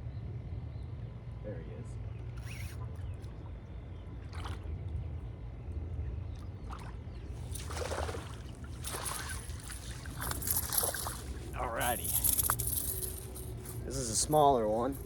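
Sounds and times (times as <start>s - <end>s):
fish splashing in water: 6.8s - 11.5s.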